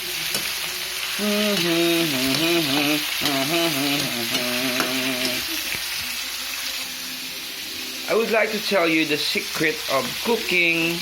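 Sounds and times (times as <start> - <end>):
person humming a tune: 0.0 - 5.8
meat sizzling in a pan: 0.0 - 11.0.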